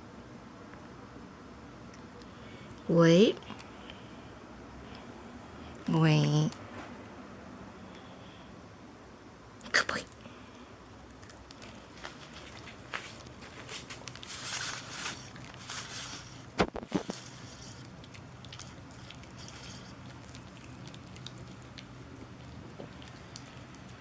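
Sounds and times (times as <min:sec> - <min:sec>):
dog crunching a treat: 0:11.1 - 0:24.0.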